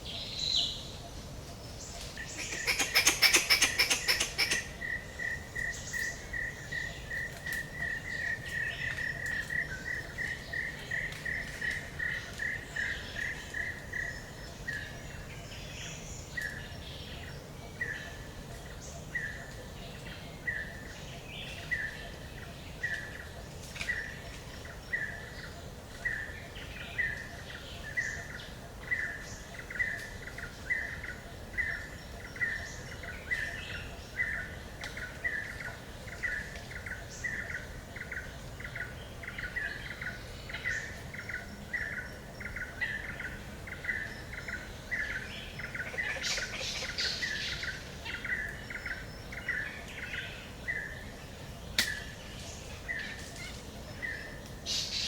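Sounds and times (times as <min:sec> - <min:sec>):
higher bird chirps: 0:02.2 - 0:06.6.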